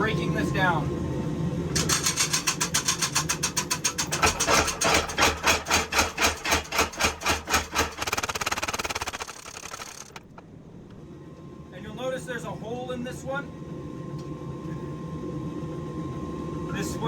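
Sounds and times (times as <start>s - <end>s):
power hammer pounding steel: 1.8s - 10.4s.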